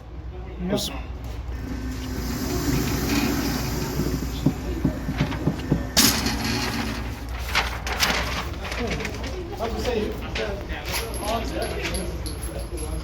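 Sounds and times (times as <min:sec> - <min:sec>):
steady low hum: 0:01.2 - 0:08.2.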